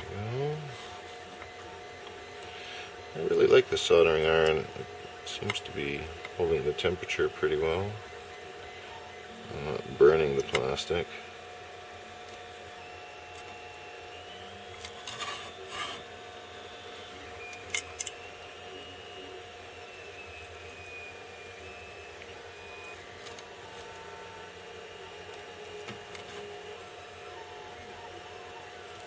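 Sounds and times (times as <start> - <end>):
faint steady whine: 0.0 - 29.0
soldering iron scraping plastic: 14.8 - 16.1.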